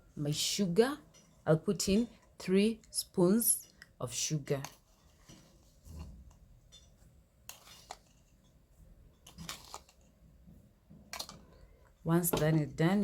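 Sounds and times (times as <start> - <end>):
spoon scooping sugar: 0.3 - 10.4.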